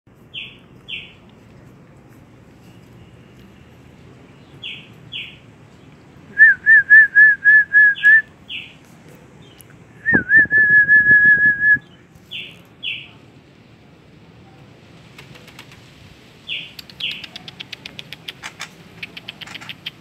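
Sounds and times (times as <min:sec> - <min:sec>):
high bird chirps: 0:00.3 - 0:01.2
bird whistling repeated notes: 0:06.4 - 0:08.7.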